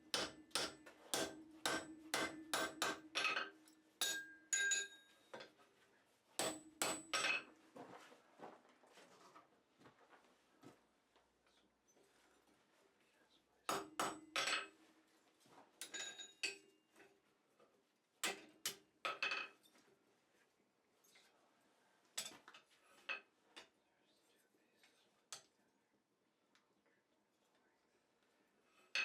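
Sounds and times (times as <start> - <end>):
steel tools clinking: 3.2 - 5.0.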